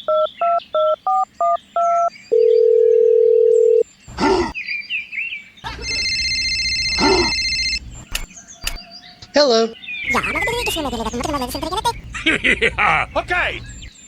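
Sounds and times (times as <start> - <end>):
steady telephone tone: 2.3 - 3.8, 5.8 - 7.8
touch-tone keypad beeps: 5.8 - 7.8.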